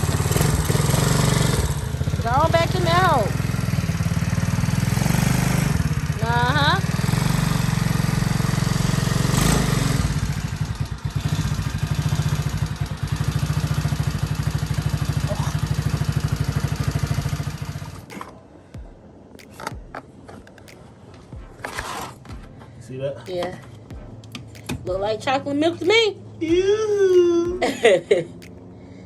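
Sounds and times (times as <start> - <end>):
engine idling: 0.0 - 18.3.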